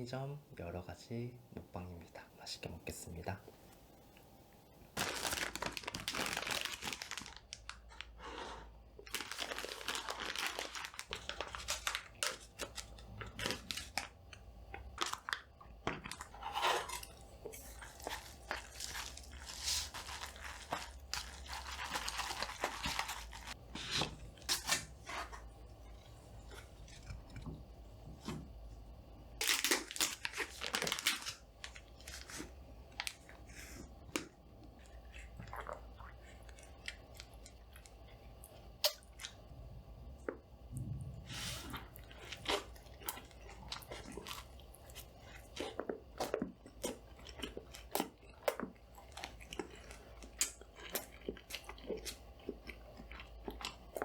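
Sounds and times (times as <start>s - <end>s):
faint electrical hum: 0.0s - 54.0s
plastic packaging tearing and crinkling: 5.0s - 8.0s, 9.0s - 14.1s, 18.1s - 25.4s, 29.4s - 33.2s.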